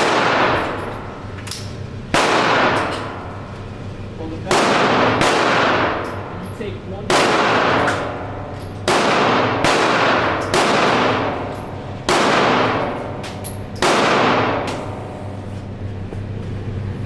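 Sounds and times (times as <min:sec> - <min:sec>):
echoing gunshots: 0:00.0 - 0:01.0, 0:02.1 - 0:03.3, 0:04.5 - 0:06.4, 0:07.1 - 0:13.2, 0:13.8 - 0:15.0.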